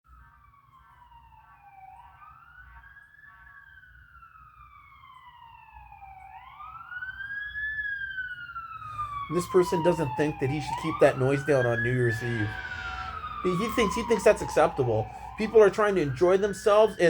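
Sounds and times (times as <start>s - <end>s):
fire truck siren wailing: 0.1s - 17.0s.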